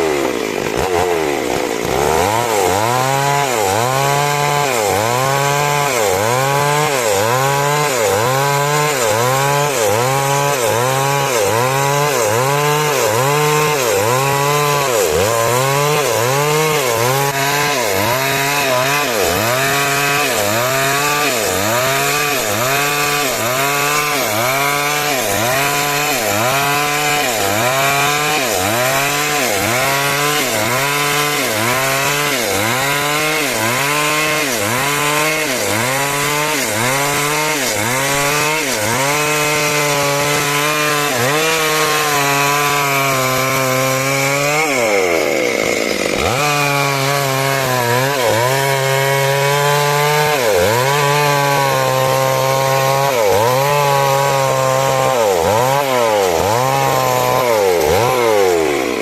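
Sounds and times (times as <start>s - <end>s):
chainsaw cutting wood: 0.0s - 59.0s.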